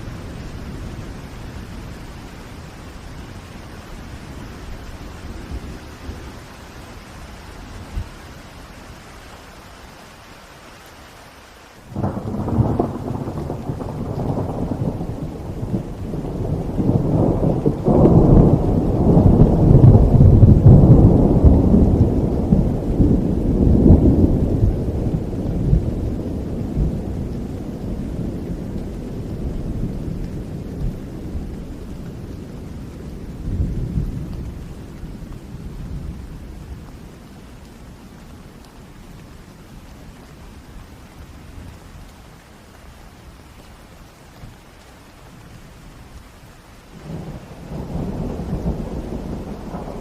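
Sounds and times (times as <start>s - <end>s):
steady rain: 0.0s - 50.0s
rolling thunder: 11.9s - 37.9s, 46.9s - 50.0s.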